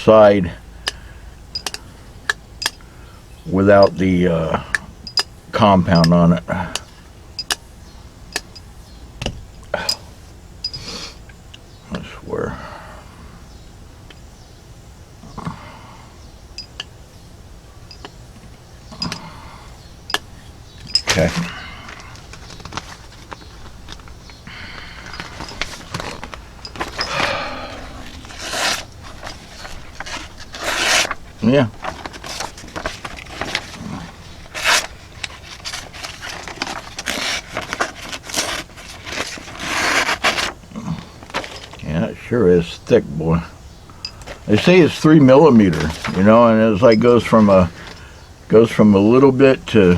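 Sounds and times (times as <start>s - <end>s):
knife scraping on leather strop: 28.2s - 31.2s.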